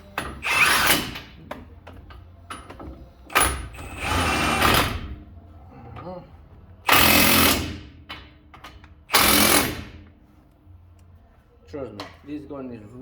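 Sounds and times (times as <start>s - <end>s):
power tool driving bolts: 0.2s - 1.3s, 3.3s - 5.1s, 6.9s - 7.9s, 9.1s - 10.0s.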